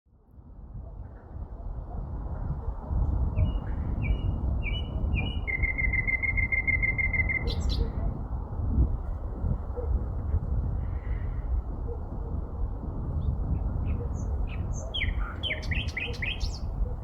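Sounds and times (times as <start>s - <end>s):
sparrow singing: 3.4s - 8.0s, 13.5s - 17.0s.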